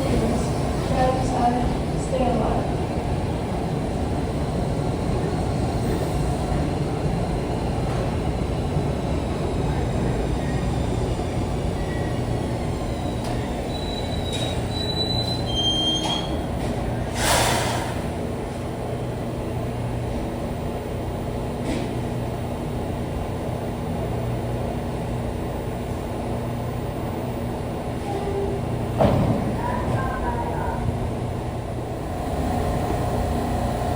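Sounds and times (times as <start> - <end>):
subway train rumbling: 0.0 - 33.9
train wheels squealing: 11.7 - 16.5.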